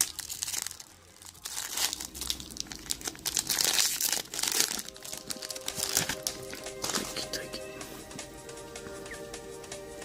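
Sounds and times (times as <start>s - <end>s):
foil wrapper crinkling and tearing: 0.0s - 7.3s.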